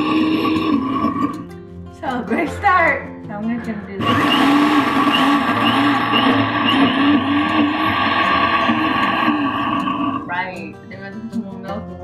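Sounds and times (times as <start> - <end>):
electric mixer motor running: 4.0 - 10.3.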